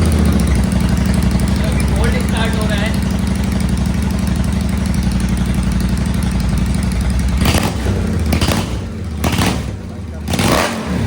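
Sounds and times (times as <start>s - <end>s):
motorcycle engine idling: 0.0s - 11.0s
motorcycle throttle blips: 0.0s - 11.0s.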